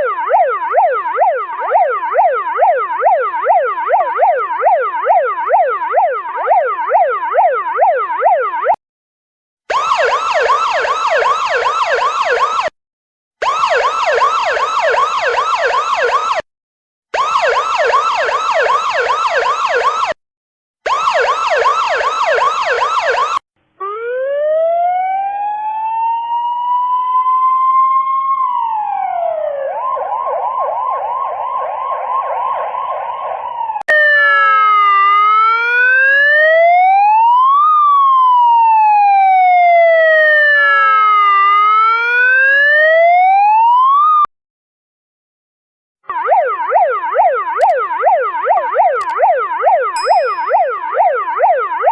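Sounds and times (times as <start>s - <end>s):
rising and falling siren wail: 0.0s - 8.8s, 9.7s - 12.7s, 13.4s - 16.4s, 17.2s - 20.2s, 20.9s - 44.3s, 46.1s - 51.9s
warbling siren: 0.0s - 8.8s, 9.7s - 12.7s, 13.4s - 16.4s, 17.2s - 20.2s, 20.9s - 44.3s, 46.1s - 51.9s
yelp siren: 0.0s - 8.8s, 9.7s - 12.7s, 13.4s - 16.4s, 17.1s - 20.2s, 20.8s - 44.3s, 46.1s - 51.9s.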